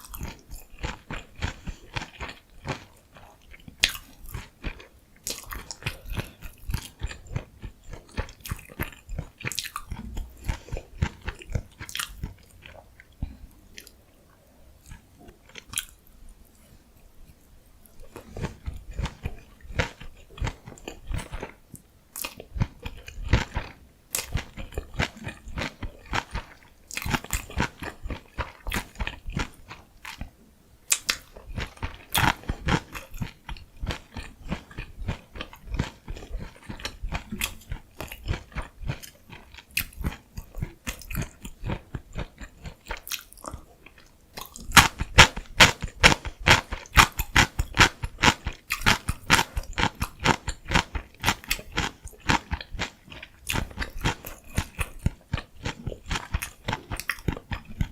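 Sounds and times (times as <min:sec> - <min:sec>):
crunchy chewing: 0:00.0 - 0:16.7, 0:17.8 - 0:30.3, 0:30.9 - 0:57.9.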